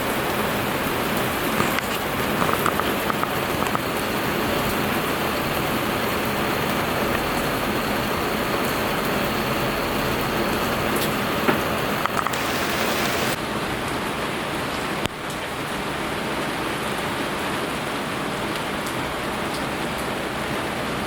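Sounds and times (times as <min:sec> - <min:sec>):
steady rain falling: 0:00.0 - 0:21.0.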